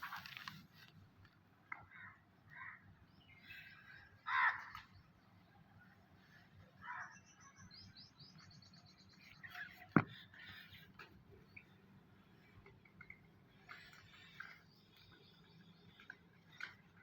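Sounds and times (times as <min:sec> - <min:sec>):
birds chirping: 0:01.7 - 0:17.0.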